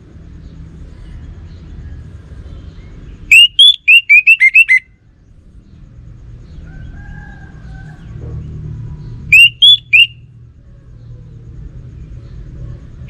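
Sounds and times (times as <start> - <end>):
thrush whistling song: 3.2 - 4.9, 9.3 - 10.2.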